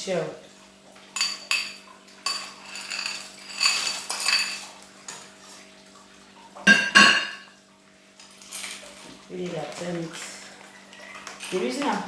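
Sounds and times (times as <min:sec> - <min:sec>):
metal utensil clinking on pot: 0:01.2 - 0:04.7, 0:06.7 - 0:07.5.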